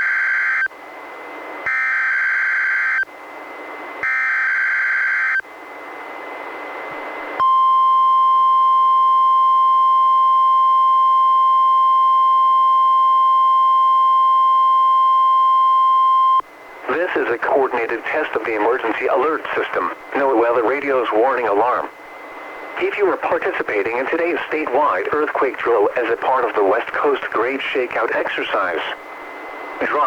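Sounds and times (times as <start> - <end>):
steady warning alarm tone: 0.0 - 0.8, 1.6 - 6.2
radio hiss: 16.8 - 29.1, 29.7 - 30.0.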